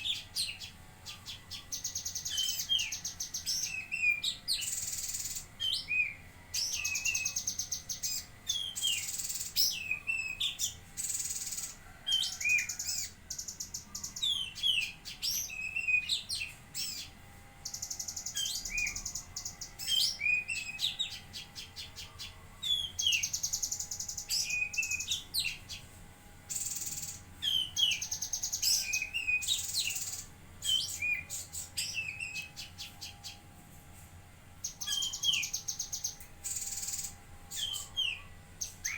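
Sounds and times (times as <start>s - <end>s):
songbird chattering trills and whistles: 0.0s - 25.8s, 26.5s - 33.4s, 34.6s - 38.9s.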